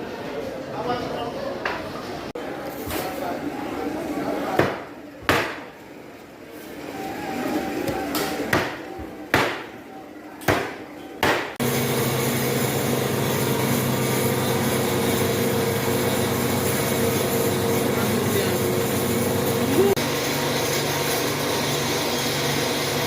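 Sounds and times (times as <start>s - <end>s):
heavy chopping strikes: 4.6s - 5.7s, 8.5s - 9.7s, 10.5s - 11.6s.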